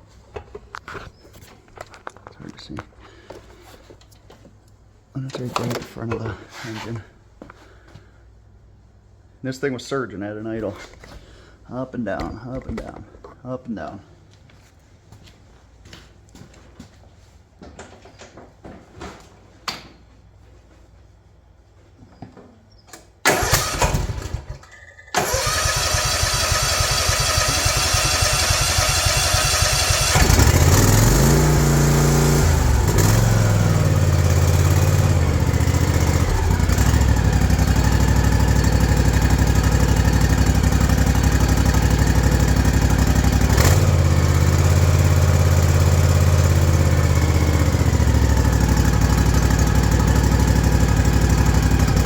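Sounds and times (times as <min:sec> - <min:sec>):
engine starter cranking: 0:23.2 - 0:33.8
mower engine running: 0:23.3 - 0:52.0.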